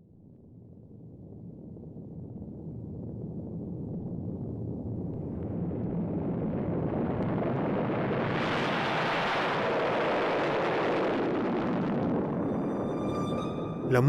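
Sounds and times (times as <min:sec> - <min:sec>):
dense roar of noise: 0:05.9 - 0:14.0.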